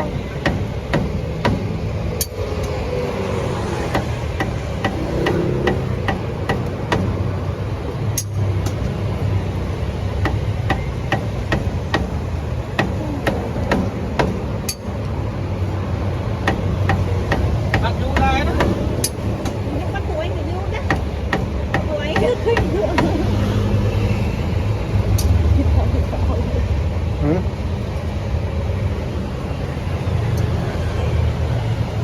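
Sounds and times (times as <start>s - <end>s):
sharp knocks: 3.9s - 7.4s.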